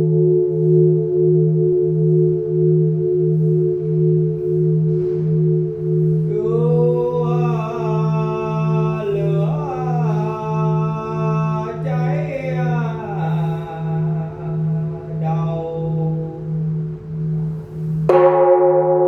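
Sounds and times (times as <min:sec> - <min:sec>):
deep wavering bell tone: 0:00.0 - 0:19.0
high ringing tones: 0:00.0 - 0:19.0
person chanting: 0:05.4 - 0:18.2.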